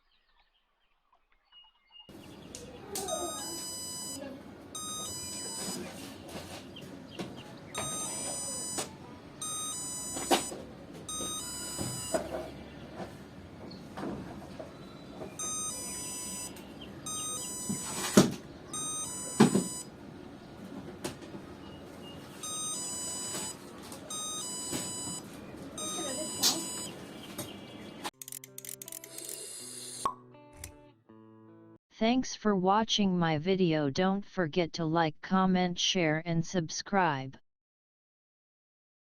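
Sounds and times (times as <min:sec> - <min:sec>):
electronic ding-dong chime: 0:03.0 - 0:04.2, 0:04.8 - 0:05.7, 0:07.8 - 0:10.5, 0:11.1 - 0:12.2, 0:15.4 - 0:18.1, 0:18.7 - 0:19.9, 0:22.4 - 0:25.2, 0:25.8 - 0:26.9.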